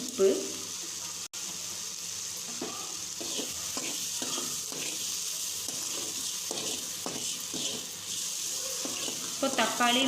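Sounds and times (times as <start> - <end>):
masala sizzling in oil: 0.0 - 10.0
scraping stirring strokes: 3.2 - 9.8.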